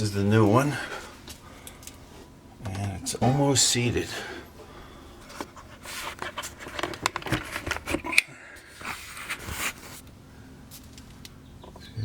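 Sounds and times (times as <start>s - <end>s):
tools scraping and knocking: 5.2s - 8.2s.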